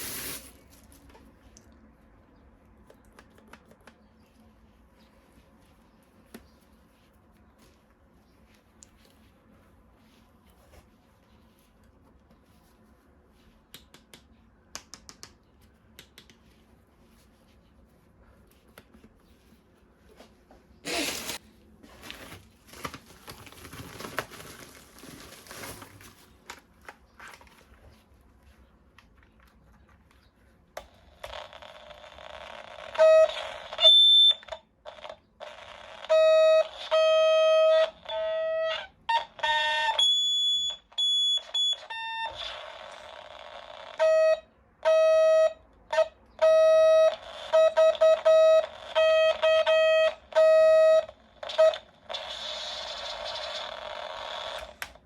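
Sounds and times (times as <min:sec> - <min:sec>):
plastic packaging rustling: 0:20.9 - 0:28.1
electronic toy beeping: 0:32.8 - 0:34.5, 0:35.6 - 0:54.7.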